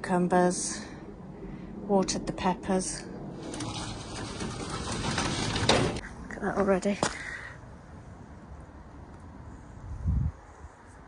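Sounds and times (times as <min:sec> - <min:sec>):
wind rumble: 0:00.8 - 0:06.4.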